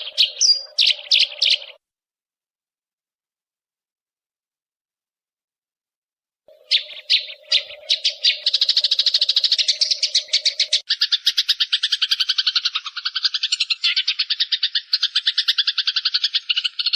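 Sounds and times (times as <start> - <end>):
sparrow chattering call: 0.0 - 1.8, 6.5 - 16.9.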